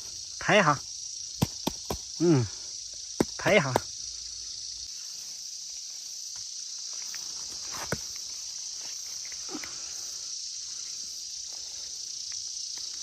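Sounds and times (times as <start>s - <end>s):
insects chorus: 0.0s - 13.0s
rustle on forest floor: 3.9s - 13.0s.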